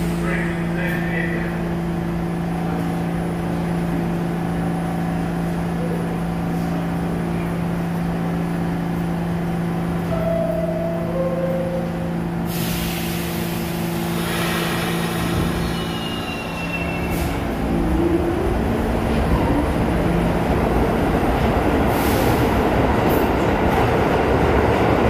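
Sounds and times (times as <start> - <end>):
subway train electrical hum: 0.0 - 25.0
loud air hiss: 12.4 - 17.5, 21.9 - 22.6.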